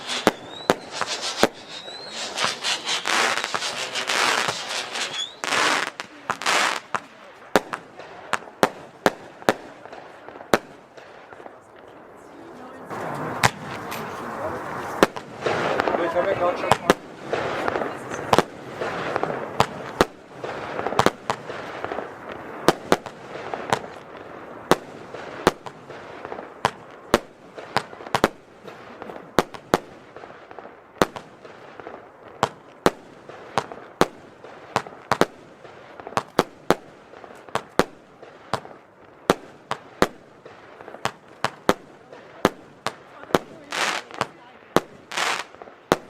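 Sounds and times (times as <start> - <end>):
hiss of launching shots: 0.0 - 9.6
firework bangs: 0.0 - 46.0.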